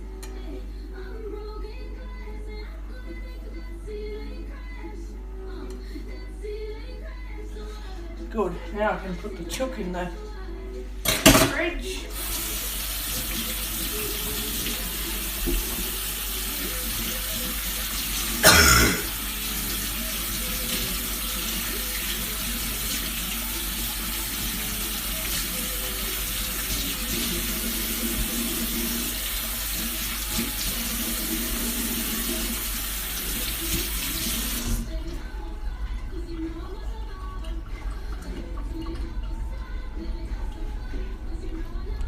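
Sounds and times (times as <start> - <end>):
tap running into sink: 14.6 - 15.9.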